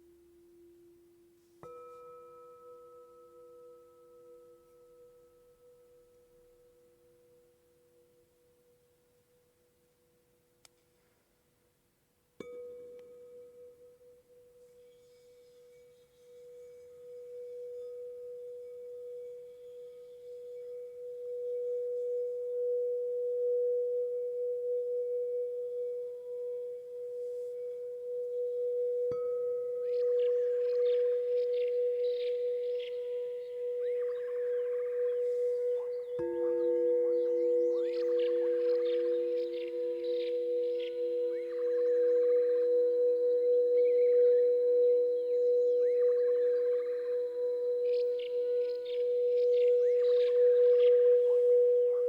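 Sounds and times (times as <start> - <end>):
singing bowl struck humming: 0.0 - 7.5, 12.4 - 52.0
singing bowl ringing tone: 0.0 - 9.5, 12.4 - 52.0.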